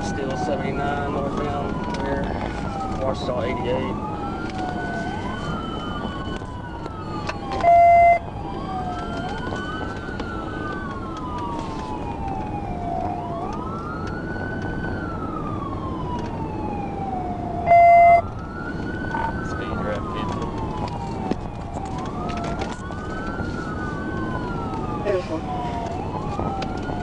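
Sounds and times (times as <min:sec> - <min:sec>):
police siren wailing: 0:00.0 - 0:27.0
road noise: 0:00.0 - 0:27.0
loud beep: 0:07.6 - 0:08.2, 0:17.7 - 0:18.2.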